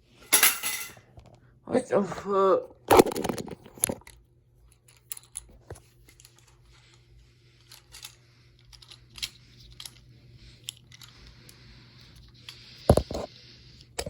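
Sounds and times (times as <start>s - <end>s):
low steady hum: 0.0s - 14.0s
small parts clicking: 3.0s - 7.0s, 7.6s - 11.6s.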